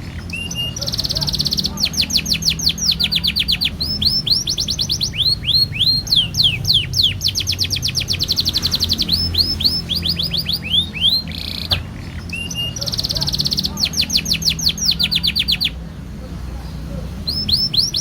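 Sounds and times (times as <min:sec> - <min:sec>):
canary singing trills: 0:00.0 - 0:18.0.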